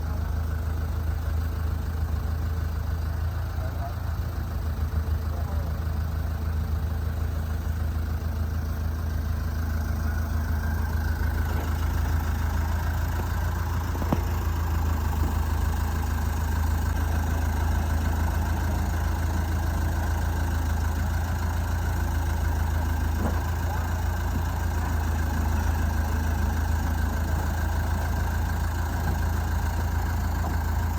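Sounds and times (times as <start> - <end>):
engine idling: 0.0 - 30.9.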